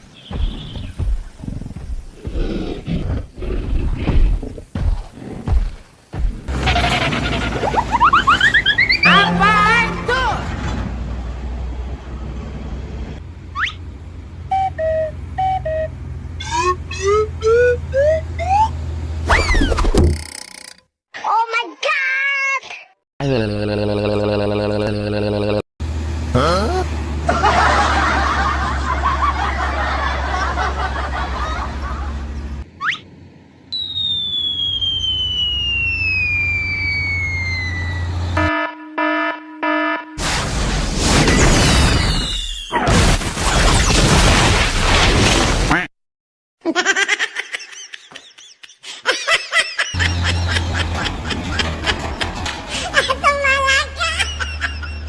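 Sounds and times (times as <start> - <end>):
engine rumble: 0.0 - 20.4, 25.8 - 38.5, 50.0 - 55.0
multi-tone bus horn melody: 6.5 - 8.0, 8.7 - 11.0, 14.4 - 18.8, 37.9 - 40.2
falling whistle: 7.6 - 9.6, 13.6 - 13.8, 14.5 - 18.7, 33.7 - 38.6, 41.3 - 42.8.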